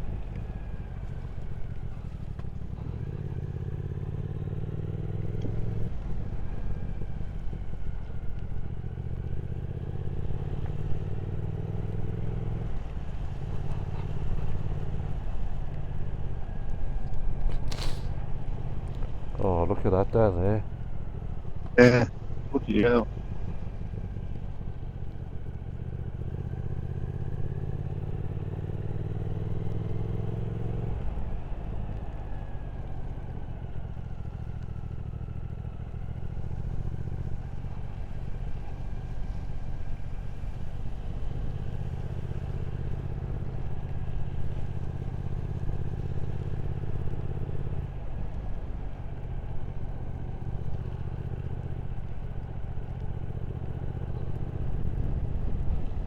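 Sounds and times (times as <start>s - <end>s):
motorcycle engine: 0.0s - 56.0s.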